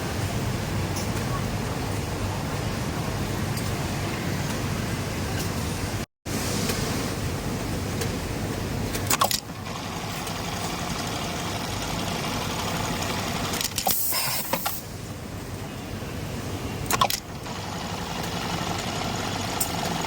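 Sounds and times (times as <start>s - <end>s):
machine clatter bursts: 9.0s - 14.8s, 16.8s - 20.0s
sewing machines running: 9.6s - 13.7s, 17.3s - 20.0s.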